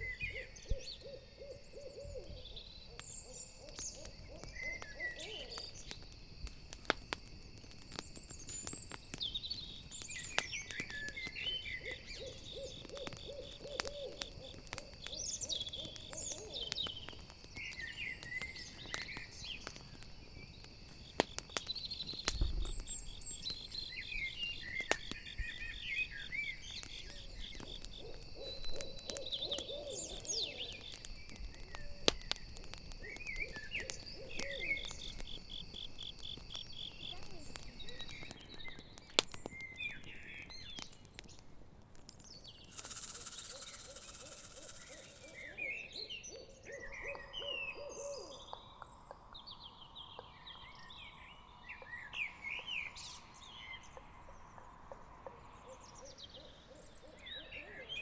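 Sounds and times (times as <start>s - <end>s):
owl hooting: 0.0s - 5.7s, 11.8s - 16.8s, 27.6s - 30.8s, 42.7s - 48.6s
crickets chirping: 0.0s - 40.7s, 42.5s - 58.0s
crackling campfire: 0.0s - 58.0s
high chirps: 42.7s - 45.6s.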